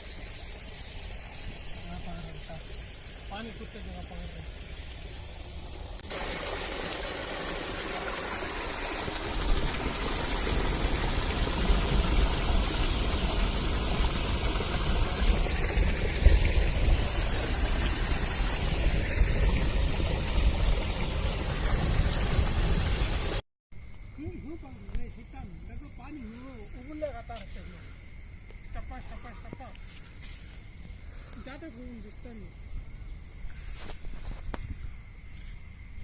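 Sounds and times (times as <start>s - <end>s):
rushing runoff water: 0.0s - 23.4s
heavy rain: 1.0s - 23.4s.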